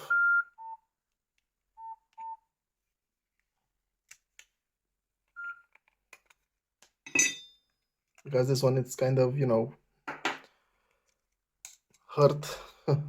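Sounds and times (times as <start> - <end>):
phone keypad beeps: 5.4 - 5.7.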